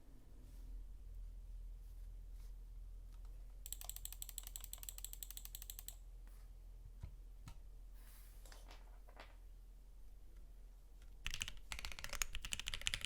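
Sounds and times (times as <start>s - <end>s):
mechanical keyboard typing: 3.7s - 6.0s, 11.2s - 13.0s.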